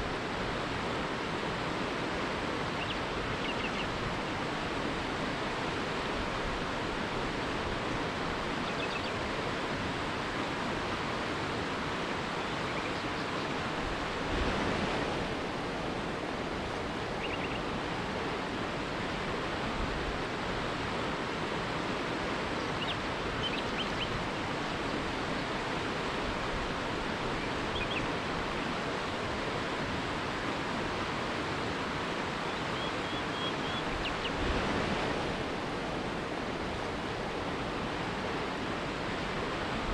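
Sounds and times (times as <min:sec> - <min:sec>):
river rapids rushing: 0:00.0 - 0:39.9
faint bird chirps: 0:02.8 - 0:03.9, 0:17.2 - 0:17.7, 0:22.6 - 0:24.1, 0:27.4 - 0:28.1, 0:32.5 - 0:34.4.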